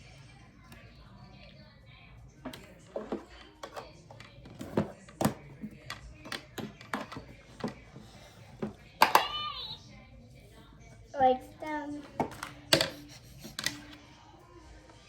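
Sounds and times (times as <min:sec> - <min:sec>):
plastic toy clicks and taps: 0:09.0 - 0:09.4.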